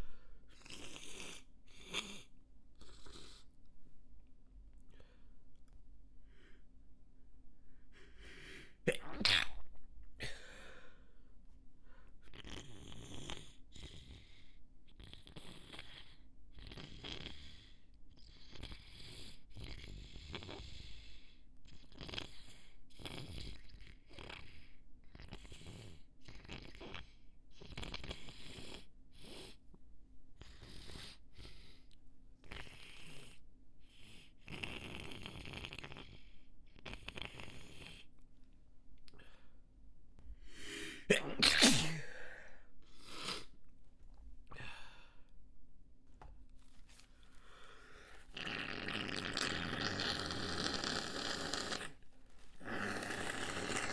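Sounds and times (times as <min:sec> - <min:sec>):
person sneezing: 0:08.9 - 0:10.5, 0:40.7 - 0:42.4.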